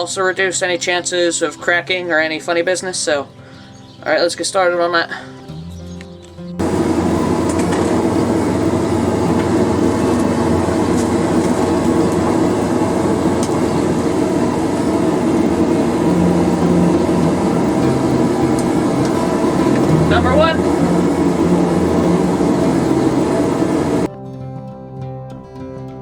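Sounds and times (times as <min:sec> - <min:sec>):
forge rushing noise: 0:06.6 - 0:24.1.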